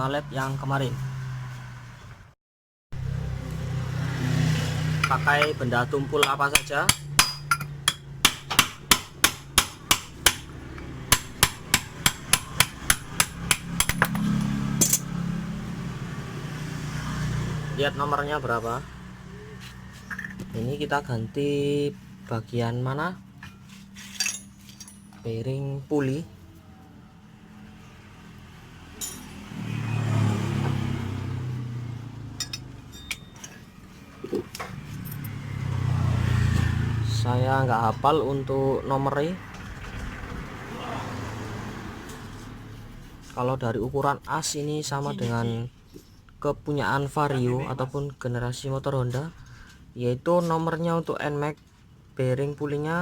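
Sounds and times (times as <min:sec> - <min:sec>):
hammer striking metal: 0:05.0 - 0:15.1, 0:32.4 - 0:33.6
metal parts clinking: 0:06.2 - 0:08.1, 0:13.8 - 0:15.1, 0:20.0 - 0:20.4, 0:23.5 - 0:25.3, 0:29.0 - 0:29.4, 0:32.4 - 0:33.7.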